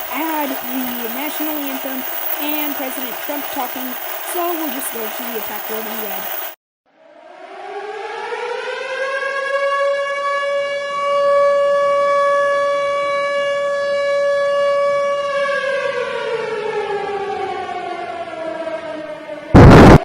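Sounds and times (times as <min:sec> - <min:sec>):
air-raid siren wailing: 0:07.0 - 0:19.6
loud burst of noise: 0:19.6 - 0:20.0.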